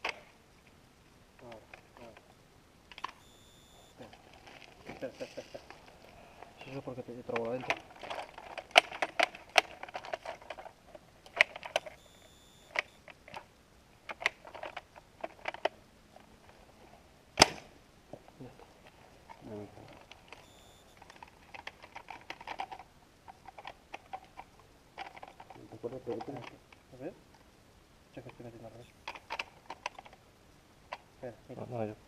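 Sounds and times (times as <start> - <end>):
small mechanical clicks and rattles: 7.2 - 13.5, 14.1 - 15.7, 19.3 - 26.6, 28.2 - 30.2.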